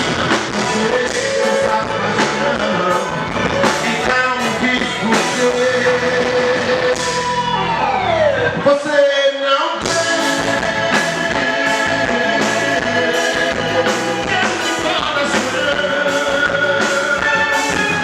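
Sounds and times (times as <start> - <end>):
drums and bass: 0.0 - 8.6, 9.8 - 18.0
sliding lead notes: 0.0 - 8.7, 9.8 - 18.0.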